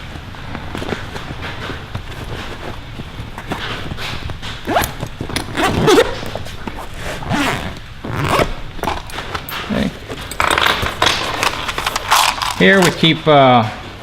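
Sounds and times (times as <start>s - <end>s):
bag rustling: 2.2s - 13.2s
zipper being pulled: 4.6s - 12.9s.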